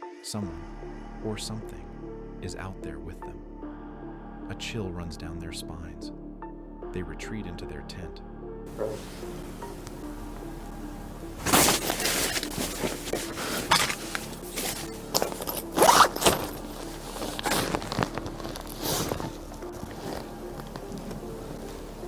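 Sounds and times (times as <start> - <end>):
quiet background music: 0.0 - 22.0
tent fabric rustling: 8.7 - 22.0.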